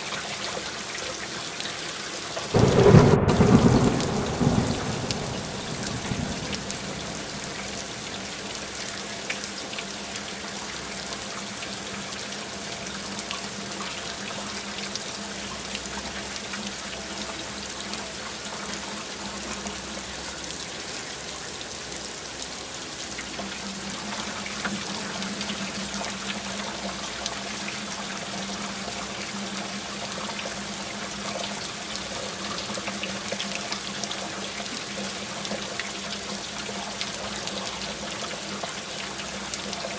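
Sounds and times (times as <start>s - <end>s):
steady rain falling: 0.0s - 39.9s
thunder rumble: 2.6s - 8.1s.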